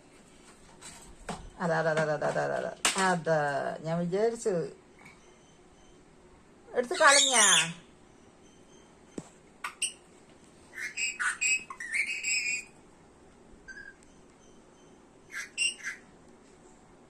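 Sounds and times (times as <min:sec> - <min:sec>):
parrot chirping: 0:06.8 - 0:08.9, 0:09.6 - 0:10.1, 0:10.7 - 0:12.8, 0:13.7 - 0:16.2.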